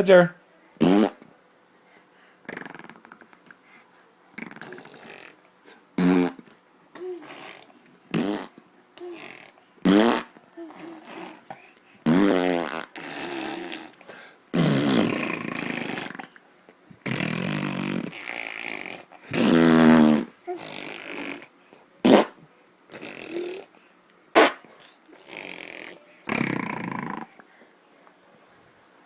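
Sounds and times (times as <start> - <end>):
baby making fart sounds: 0.8 - 1.3, 2.4 - 3.4, 4.4 - 5.4, 6.0 - 16.4, 17.0 - 23.7, 24.3 - 27.4.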